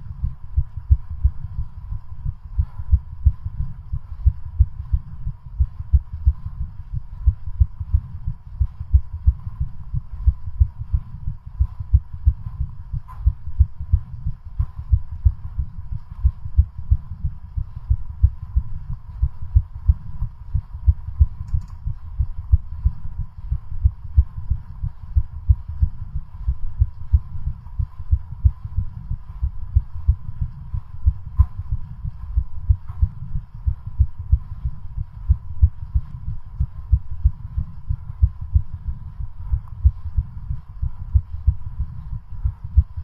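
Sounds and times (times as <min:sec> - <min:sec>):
fast heartbeat thumps: 0:00.0 - 0:43.0.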